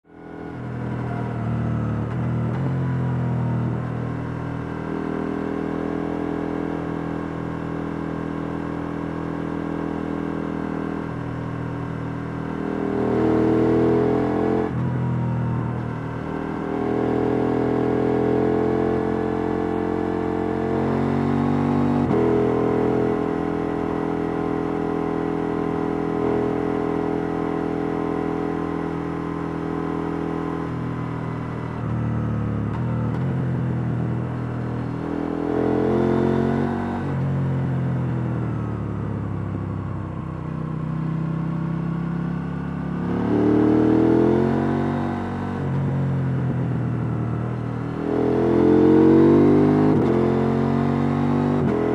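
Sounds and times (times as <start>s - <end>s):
motorcycle engine revving: 41.6s - 51.9s.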